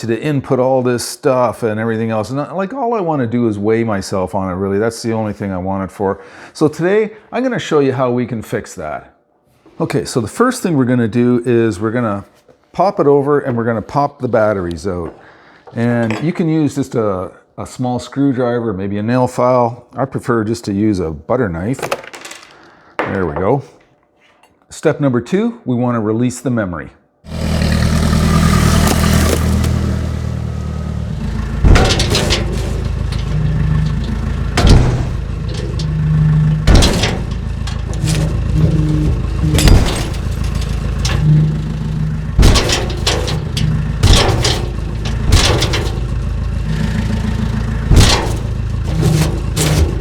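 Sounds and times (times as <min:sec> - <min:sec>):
engine running: 0:27.3 - 0:50.0
loud sharp crashes and clatter: 0:27.3 - 0:50.0.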